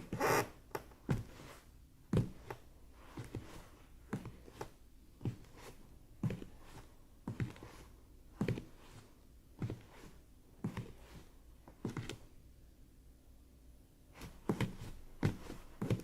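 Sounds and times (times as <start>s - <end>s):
slow walking footsteps: 1.0s - 12.2s, 14.2s - 16.0s.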